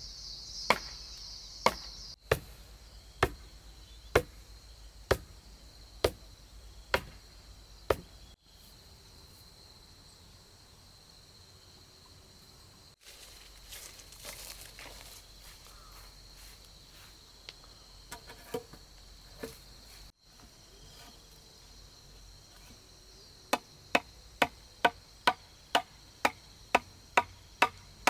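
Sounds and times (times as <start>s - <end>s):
tool striking wood: 0.7s - 1.0s, 1.6s - 4.5s, 5.1s - 8.2s, 23.5s - 27.9s
rustling movement: 13.0s - 15.9s.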